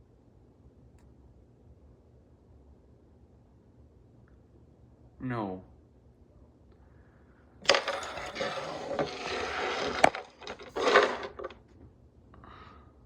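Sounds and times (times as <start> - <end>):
objects rustling and scraping: 7.6 - 11.6.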